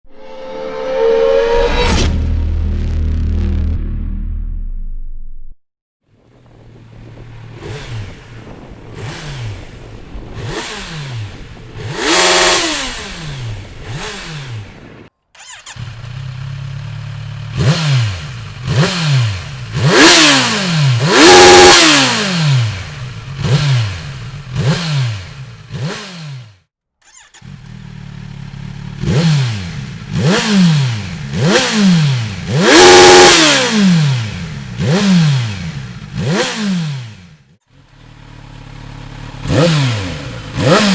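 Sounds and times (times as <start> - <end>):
motorcycle engine revving: 6.1 - 40.9.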